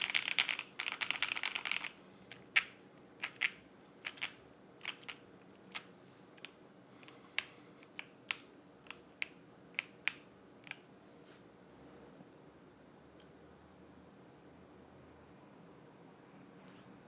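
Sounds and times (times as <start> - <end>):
mechanical keyboard keys clacking: 0.0 - 1.9, 2.6 - 5.8.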